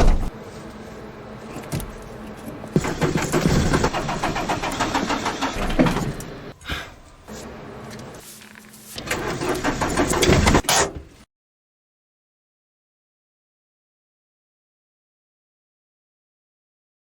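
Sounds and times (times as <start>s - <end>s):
engine cranking and revving: 2.8s - 6.5s, 9.0s - 10.6s.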